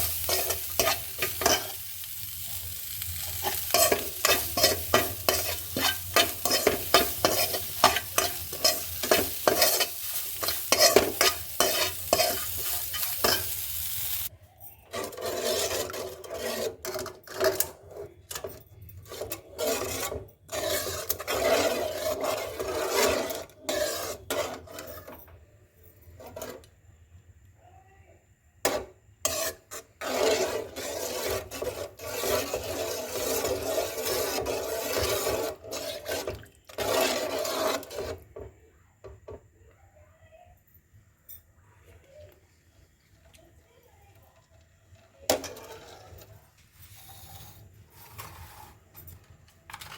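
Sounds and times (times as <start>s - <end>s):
food sizzling: 0.0s - 14.3s, 28.7s - 38.3s
spatula stirring and scraping pan: 0.0s - 25.4s, 26.0s - 27.1s, 28.6s - 39.4s, 44.4s - 49.9s.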